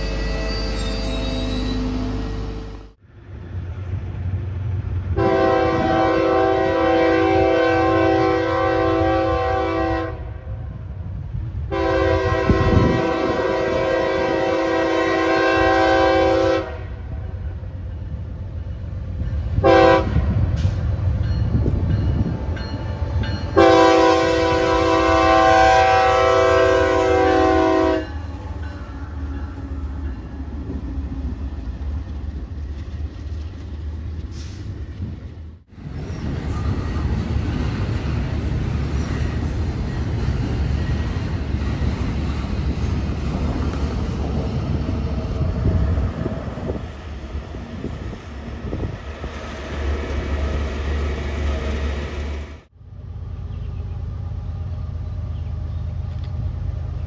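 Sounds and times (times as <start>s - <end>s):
train engines and wheels rumbling: 0.0s - 57.0s
locomotive air horn blasts: 5.2s - 10.5s, 11.7s - 17.1s, 19.6s - 20.4s, 23.6s - 28.7s.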